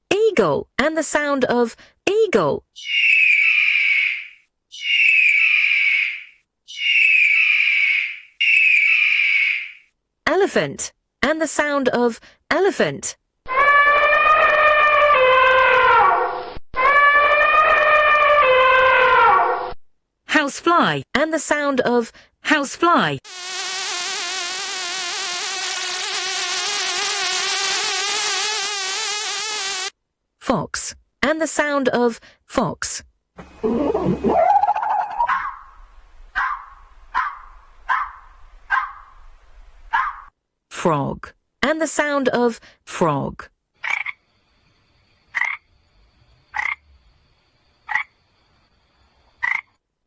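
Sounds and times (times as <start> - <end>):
housefly buzzing: 23.2 - 30.0
frog croaking: 43.8 - 44.3, 45.3 - 45.8, 46.4 - 47.0, 47.8 - 48.2, 49.3 - 49.8.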